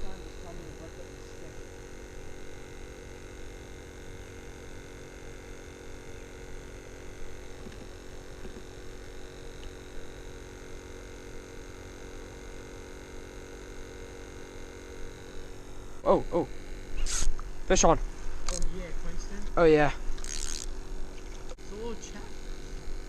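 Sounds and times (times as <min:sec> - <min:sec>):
steady hum of held tones: 0:00.0 - 0:23.0.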